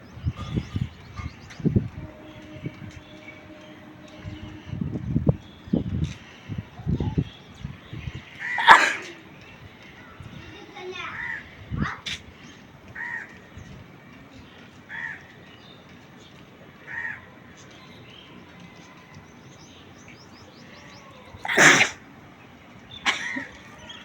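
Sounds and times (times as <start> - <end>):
woman sneezing: 8.6 - 9.2, 21.5 - 22.0
crow cawing: 13.0 - 13.3, 16.9 - 17.2.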